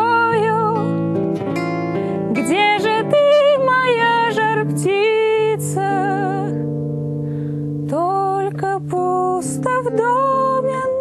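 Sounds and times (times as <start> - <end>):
woman singing with vibrato: 0.0 - 0.9, 2.3 - 6.7, 7.9 - 11.0
acoustic guitar chords: 0.0 - 11.0.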